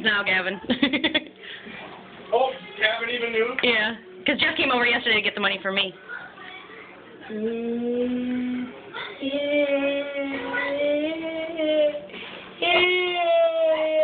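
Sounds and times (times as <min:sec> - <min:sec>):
person singing long notes: 0:07.3 - 0:14.0.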